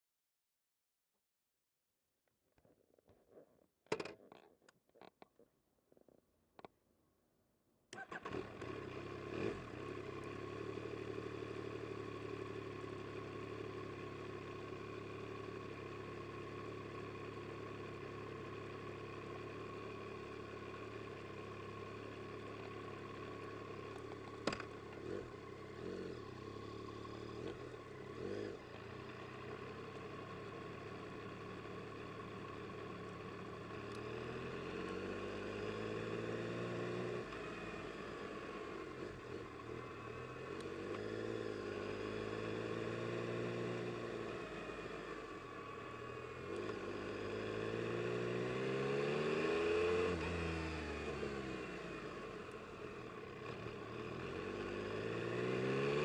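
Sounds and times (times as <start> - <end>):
motorcycle engine idling: 8.0 - 34.9.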